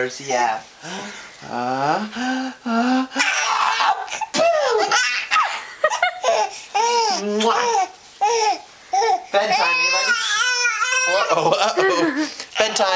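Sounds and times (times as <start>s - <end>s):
adult voice drawing out a sound: 0.3s - 5.0s
pretend sneeze: 3.2s - 5.6s
baby belly-laughing: 3.2s - 12.9s.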